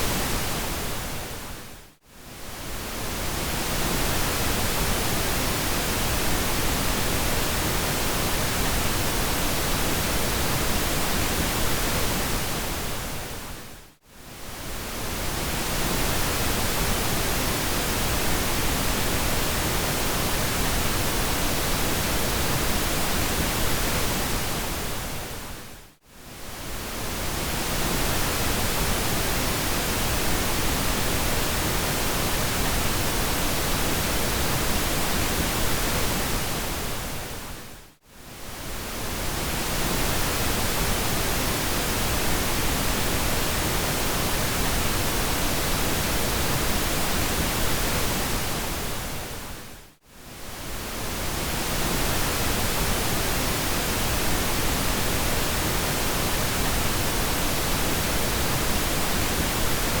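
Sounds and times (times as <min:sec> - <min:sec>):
pink noise hiss: 0:26.2 - 1:00.0.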